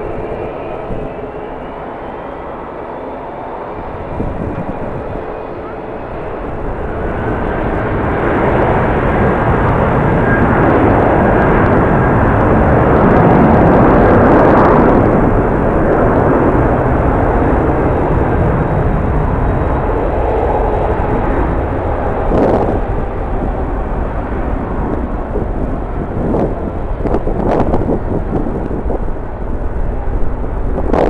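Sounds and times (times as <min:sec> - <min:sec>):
jet airliner engine: 0:00.0 - 0:31.0
wind buffeting microphone: 0:00.0 - 0:31.0.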